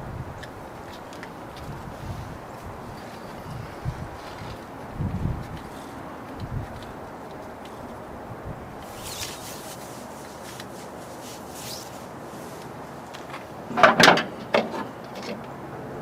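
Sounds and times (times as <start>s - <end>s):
steady background hiss: 0.0s - 16.0s
rubbing and scraping: 8.8s - 12.6s.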